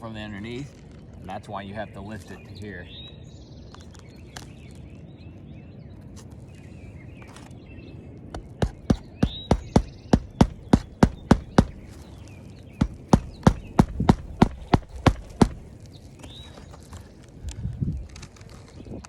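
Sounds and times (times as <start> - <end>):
hammer driving roofing nails: 8.4 - 12.1, 12.7 - 15.8.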